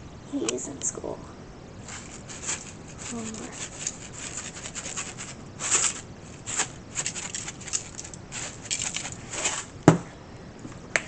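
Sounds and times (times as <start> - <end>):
scratchy rustling strokes: 1.8 - 9.8.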